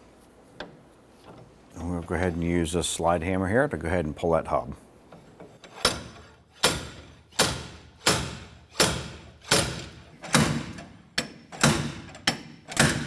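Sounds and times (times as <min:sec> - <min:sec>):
slide hammer metallic strikes: 0:05.8 - 0:13.0.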